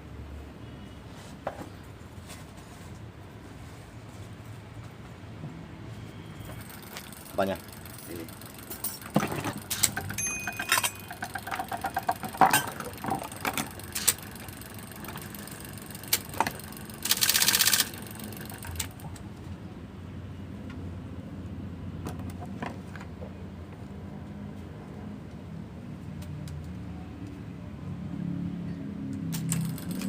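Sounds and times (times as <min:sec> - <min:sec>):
typewriter motor humming: 0:06.5 - 0:19.1, 0:29.3 - 0:30.0
typewriter mechanism clicks and rattles: 0:06.5 - 0:19.2, 0:29.2 - 0:30.0
typewriter rapid clattering burst: 0:12.9 - 0:19.0, 0:29.4 - 0:30.0.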